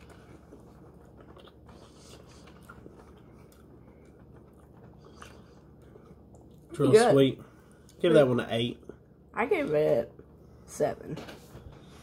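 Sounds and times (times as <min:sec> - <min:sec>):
chewing and mouth sounds: 0:00.0 - 0:06.8.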